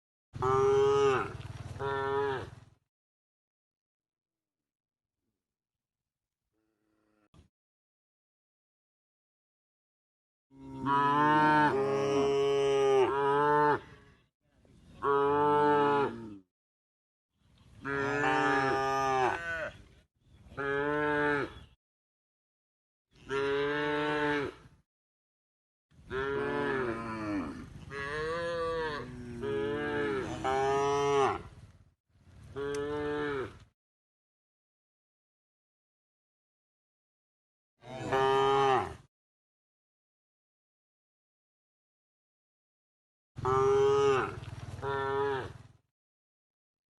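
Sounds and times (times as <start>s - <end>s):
cow mooing: 0.4s - 2.5s, 6.6s - 7.3s, 10.5s - 14.0s, 15.0s - 16.4s, 17.8s - 19.8s, 20.6s - 21.6s, 23.2s - 24.7s, 26.1s - 31.5s, 32.6s - 33.6s, 37.8s - 39.1s, 43.4s - 45.6s.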